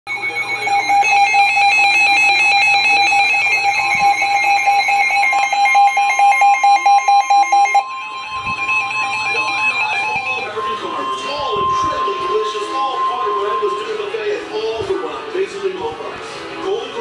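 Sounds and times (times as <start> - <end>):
loud electronic alert tone: 0.1 - 14.8.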